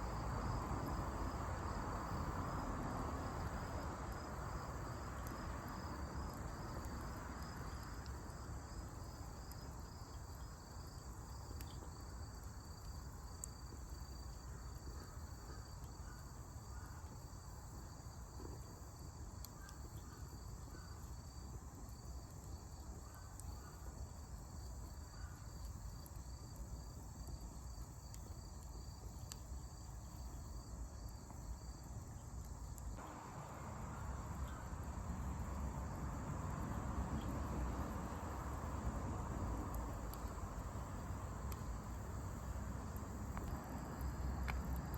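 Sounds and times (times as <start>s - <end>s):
crickets chirping: 0.0s - 44.9s
faint sharp clicks: 28.1s - 29.4s, 39.7s - 40.4s, 42.9s - 44.9s.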